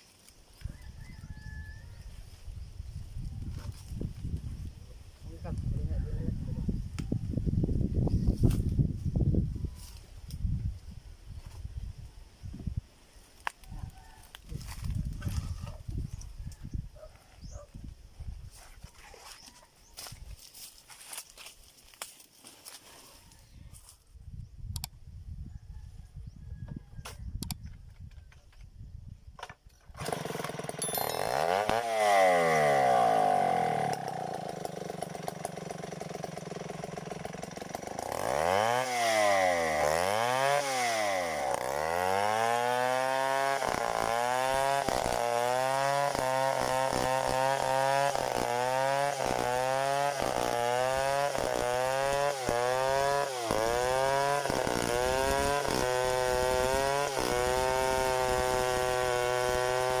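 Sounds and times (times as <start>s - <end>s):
chainsaw revving: 29.9s - 60.0s.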